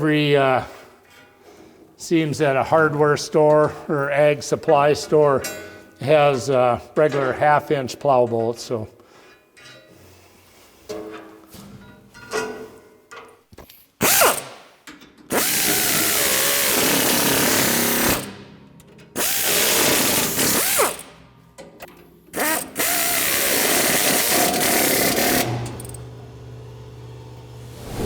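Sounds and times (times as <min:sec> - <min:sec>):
pneumatic air ratchet running: 0:14.0 - 0:14.7, 0:15.3 - 0:18.4, 0:19.2 - 0:21.2, 0:22.3 - 0:26.0.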